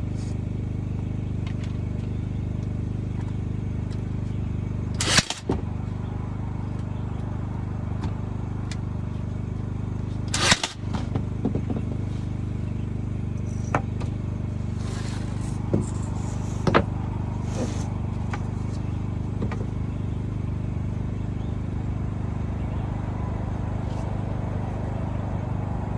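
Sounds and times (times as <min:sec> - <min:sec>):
nails driven into wood: 0:05.0 - 0:05.4, 0:10.3 - 0:10.8
machine hum: 0:12.1 - 0:20.4.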